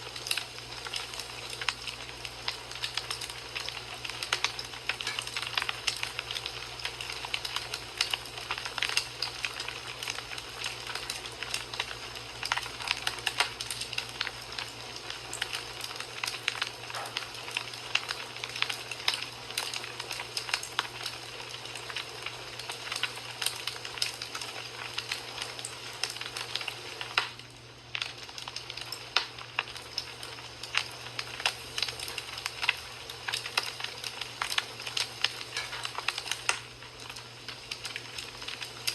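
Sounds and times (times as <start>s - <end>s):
fire crackling: 0.0s - 38.9s.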